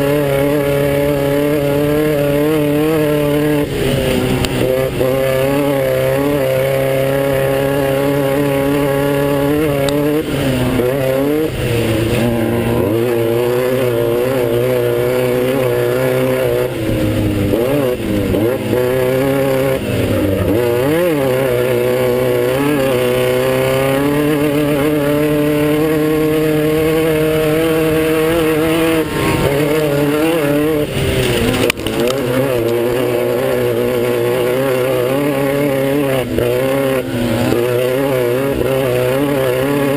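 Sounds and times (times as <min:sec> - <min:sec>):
buggy engine running hard: 0:00.0 - 0:39.9.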